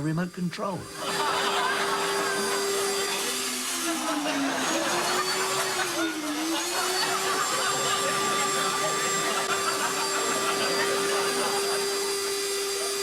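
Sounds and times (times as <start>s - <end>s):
vacuum cleaner motor whine: 0.8s - 13.0s.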